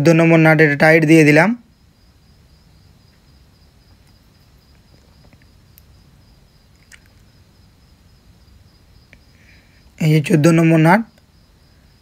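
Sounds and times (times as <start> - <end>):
faint light clicks: 4.0 - 5.9, 6.7 - 7.3.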